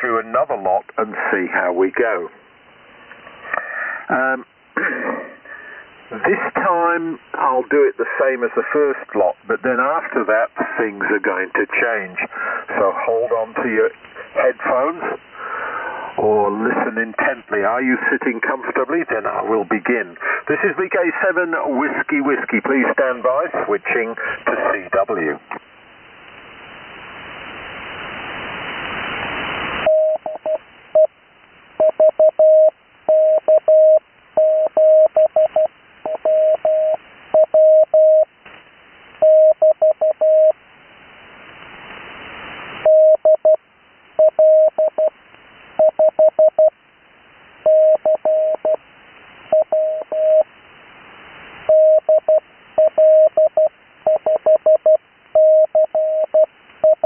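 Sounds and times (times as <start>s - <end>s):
morse code beeps: 29.9s - 31.1s, 31.8s - 38.3s, 39.2s - 40.6s, 42.8s - 43.6s, 44.2s - 45.1s, 45.8s - 46.7s, 47.7s - 48.8s, 49.5s - 50.4s, 51.7s - 57.0s.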